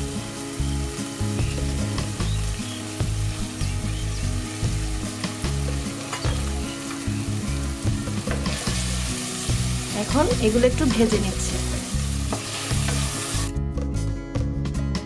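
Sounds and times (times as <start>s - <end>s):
food sizzling in hot oil: 0.0s - 13.5s
spatula scraping a pan: 5.1s - 7.2s, 8.0s - 13.5s.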